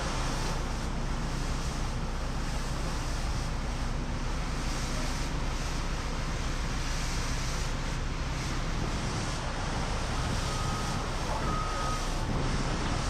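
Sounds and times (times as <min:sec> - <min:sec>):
heavy machinery engine rumble: 0:00.0 - 0:13.0
wind-like hiss: 0:00.0 - 0:13.0
reversing alarm beeping: 0:10.1 - 0:12.3.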